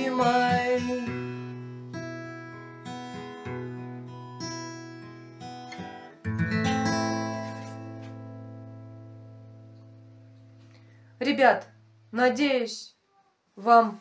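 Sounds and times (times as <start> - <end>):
acoustic guitar fingerpicking: 0.0 - 11.0.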